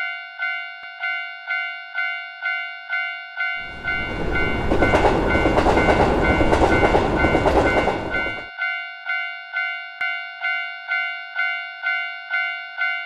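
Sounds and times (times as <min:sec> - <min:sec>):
railroad crossing bell ringing: 0:00.0 - 0:13.0
train wheel clatter: 0:03.6 - 0:08.5.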